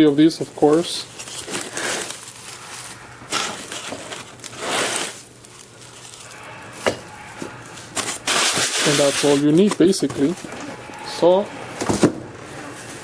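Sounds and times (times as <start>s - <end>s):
packaging rustling: 0.5s - 10.7s.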